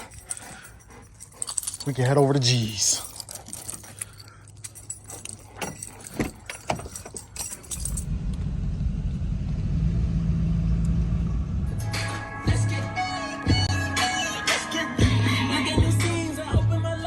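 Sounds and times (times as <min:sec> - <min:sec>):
keys jangling: 0:00.0 - 0:08.1
vehicle engine rumbling: 0:00.0 - 0:13.0.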